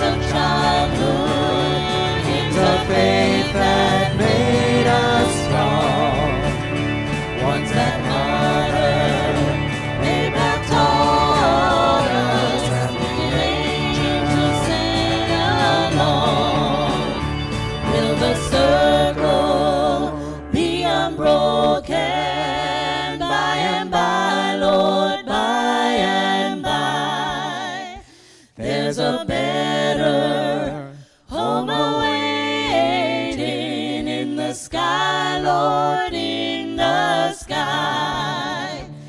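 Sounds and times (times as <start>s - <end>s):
instrumental accompaniment: 0.0s - 21.7s
gospel choir singing: 0.0s - 39.0s.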